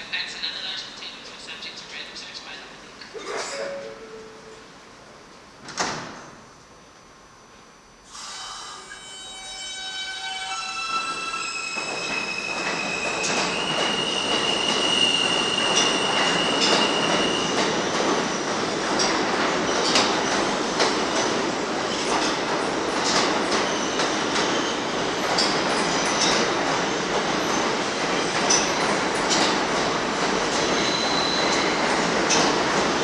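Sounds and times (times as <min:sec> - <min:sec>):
subway train running on track: 0:00.0 - 0:33.0
high-pitched wheel squeal: 0:08.2 - 0:17.5.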